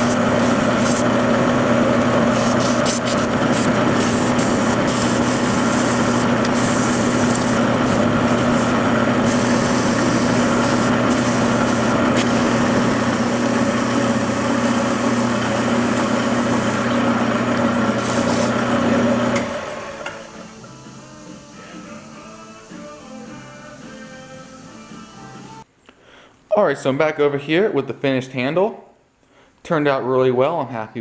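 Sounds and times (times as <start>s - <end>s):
tool cutting wood hiss: 0.0s - 1.2s, 2.2s - 16.9s, 17.9s - 18.6s, 19.9s - 25.6s
wood lathe motor humming: 0.0s - 21.2s.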